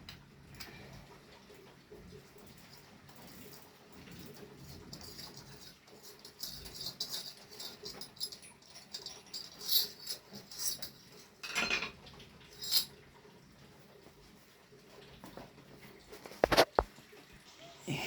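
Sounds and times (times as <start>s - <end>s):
metallic tool clicks and rattles: 3.2s - 11.9s.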